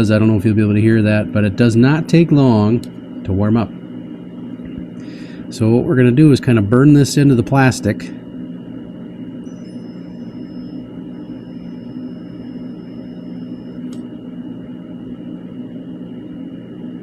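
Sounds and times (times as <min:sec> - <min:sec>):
steady low hum: 0:00.0 - 0:17.0
hot stapler buzzing with high whine: 0:06.7 - 0:17.0.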